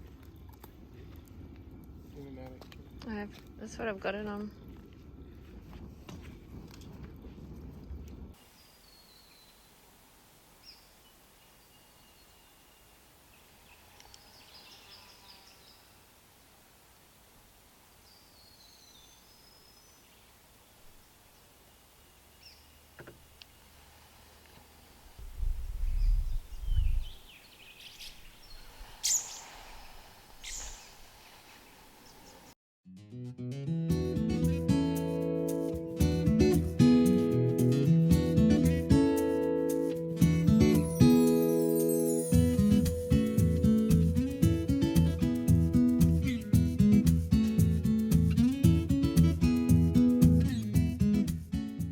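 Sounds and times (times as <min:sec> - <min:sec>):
low rumbling noise: 0:25.0 - 0:27.2
bird chirp: 0:25.7 - 0:32.5
faint bird calls: 0:25.8 - 0:32.5
flurry of high bird calls: 0:26.0 - 0:32.4
thin held bird whistle: 0:29.0 - 0:31.0.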